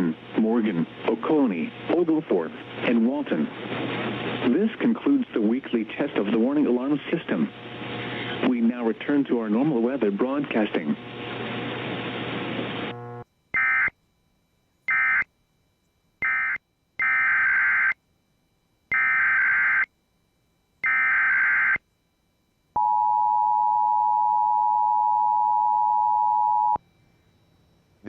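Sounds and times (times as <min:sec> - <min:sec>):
warbling data tone bursts: 0:14.9 - 0:15.3, 0:16.2 - 0:18.0, 0:18.9 - 0:19.9
two-tone attention signal: 0:22.8 - 0:26.8.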